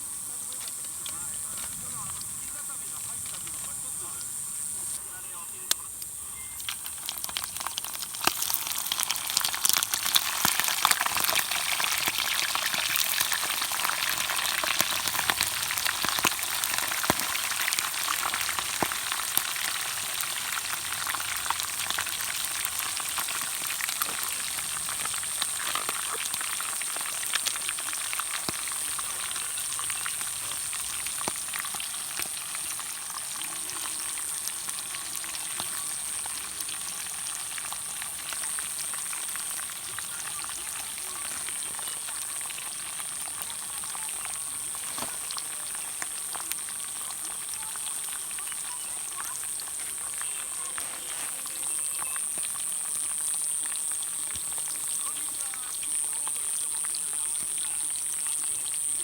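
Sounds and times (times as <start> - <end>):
thin high whine: 0.0 - 7.0
crackling hiss: 0.0 - 59.0.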